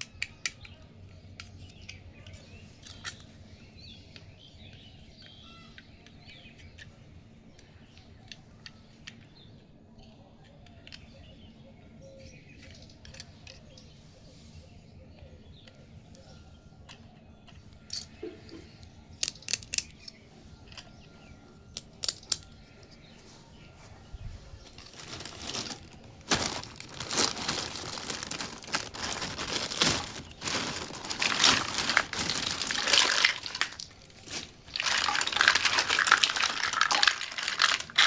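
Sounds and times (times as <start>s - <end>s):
plastic toy pieces clicking: 19.2s - 20.2s, 21.7s - 22.6s, 25.0s - 38.0s.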